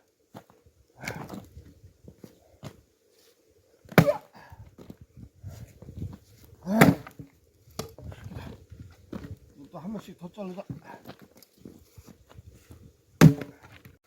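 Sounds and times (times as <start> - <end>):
axe striking logs: 3.9 - 4.3, 6.6 - 8.0, 13.2 - 13.8.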